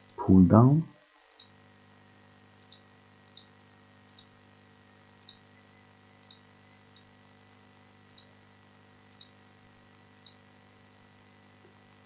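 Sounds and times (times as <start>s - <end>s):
low electrical hum: 0.0s - 12.0s
computer mouse clicks: 2.6s - 3.5s, 4.1s - 4.3s, 6.2s - 7.1s, 8.1s - 8.3s.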